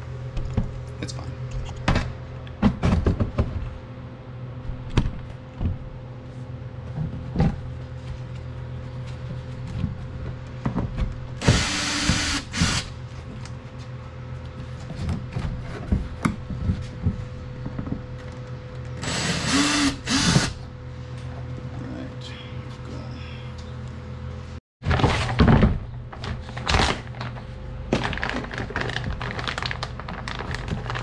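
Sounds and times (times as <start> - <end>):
cordless drill spinning: 11.4 - 12.9, 19.0 - 20.6.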